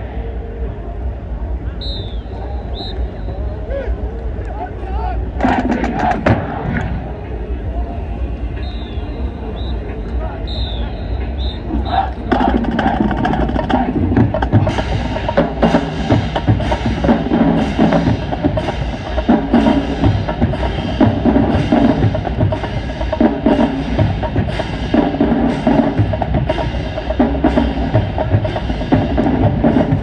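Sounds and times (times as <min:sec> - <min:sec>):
drumline playing a cadence: 0:05.3 - 0:07.4, 0:08.1 - 0:30.0.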